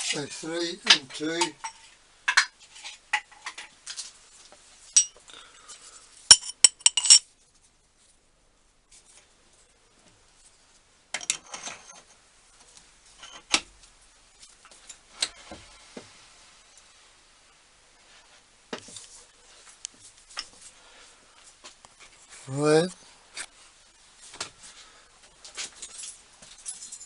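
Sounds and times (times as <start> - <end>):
metal tools clinking and knocking: 4.9 - 5.2, 6.3 - 7.3, 11.1 - 12.2, 13.2 - 13.6.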